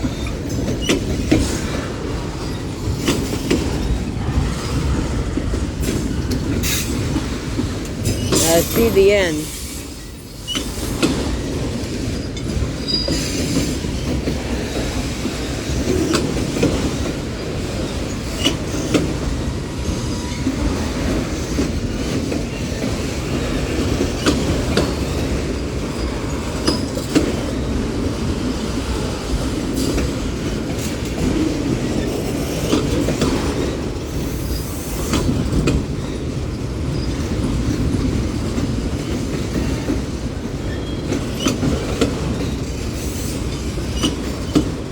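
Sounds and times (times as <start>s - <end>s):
steel wheels rumbling on rail: 0.0s - 44.9s
wheels clicking over rail joints: 10.5s - 19.6s, 29.8s - 44.9s.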